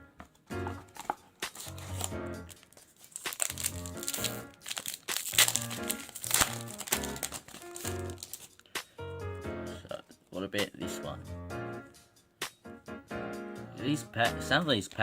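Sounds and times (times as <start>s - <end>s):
background music: 0.0s - 15.0s
foil wrapper crinkling and tearing: 0.9s - 8.7s.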